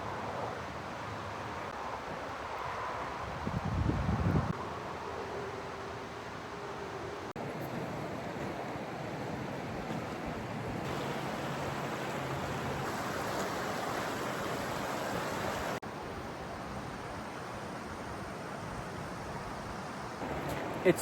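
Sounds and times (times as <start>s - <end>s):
river and waterfall rushing: 10.8s - 19.3s, 20.2s - 21.0s.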